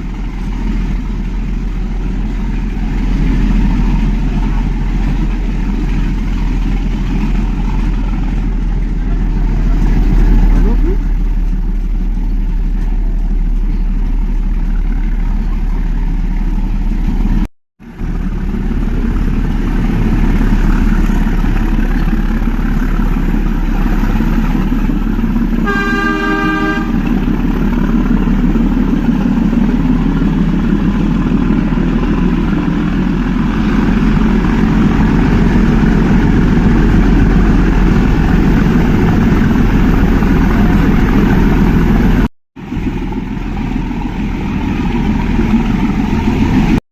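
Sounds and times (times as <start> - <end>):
toy train horn: 25.6 - 27.1.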